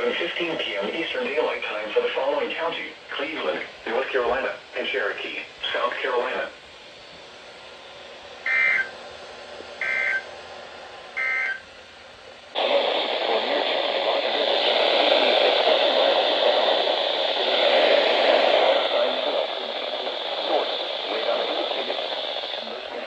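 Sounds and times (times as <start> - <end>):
radio static hiss: 0.0 - 11.7, 12.3 - 23.0
warbling two-tone data bursts: 8.5 - 8.9, 9.8 - 10.2, 11.2 - 11.6.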